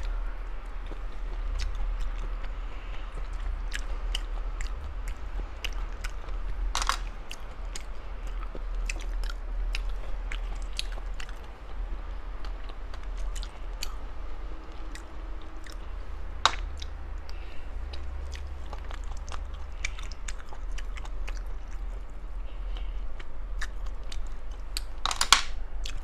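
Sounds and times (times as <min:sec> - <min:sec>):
person chewing seafood: 0:00.0 - 0:26.0.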